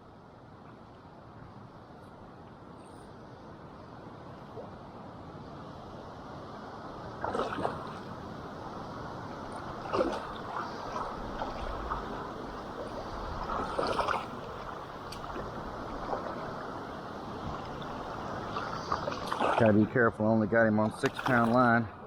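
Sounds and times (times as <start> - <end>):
river water gurgling: 3.1 - 22.0
water splashes: 7.0 - 22.0.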